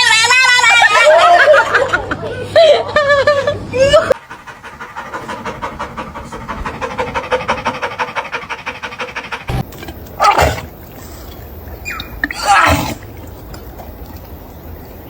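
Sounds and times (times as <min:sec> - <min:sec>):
dog panting: 0:04.1 - 0:09.7
dog vocalizing: 0:04.1 - 0:11.1, 0:11.8 - 0:13.1.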